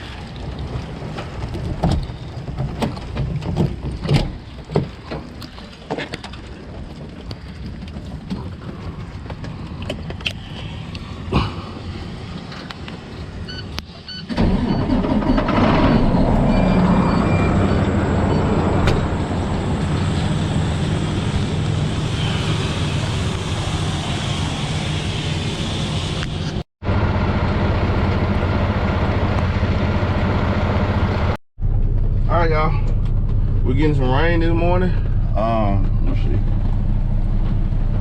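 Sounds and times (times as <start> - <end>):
diesel truck engine running: 11.6 - 38.0.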